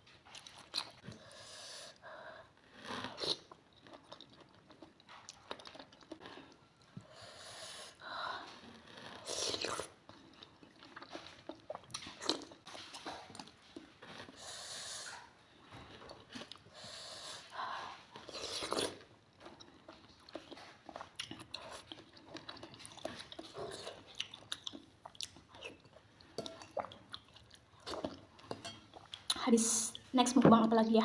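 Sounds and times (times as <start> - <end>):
chewing mouth sounds: 18.2 - 29.4.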